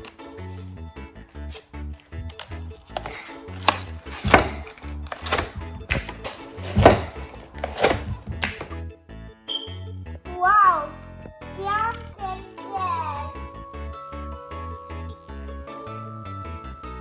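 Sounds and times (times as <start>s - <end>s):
packaging being torn and crinkled: 0.0s - 8.7s
background music with bass: 0.0s - 17.0s.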